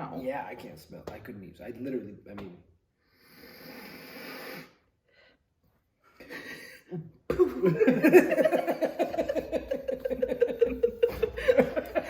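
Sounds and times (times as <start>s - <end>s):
person laughing hard: 6.2s - 12.0s.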